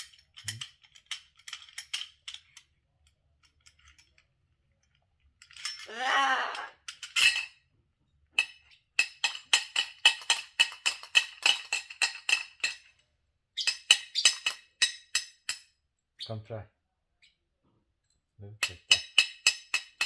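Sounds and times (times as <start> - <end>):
short vocal sound: 5.9 - 6.8.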